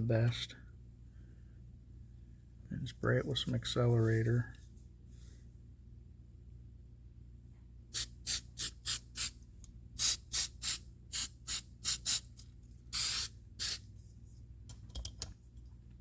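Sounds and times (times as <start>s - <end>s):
spray bottle hissing bursts: 10.0s - 12.3s, 13.0s - 13.8s.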